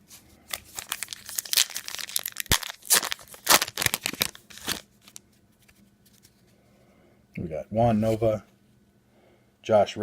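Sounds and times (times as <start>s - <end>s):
wrapper tearing and crinkling: 0.5s - 5.2s.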